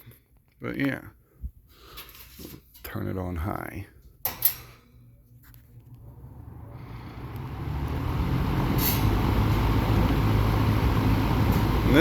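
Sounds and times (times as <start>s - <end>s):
box fan motor humming: 5.8s - 12.0s.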